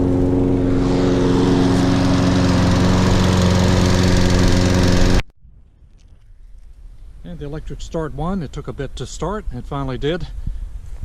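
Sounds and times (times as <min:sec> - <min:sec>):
lawn mower engine running: 0:00.0 - 0:05.2.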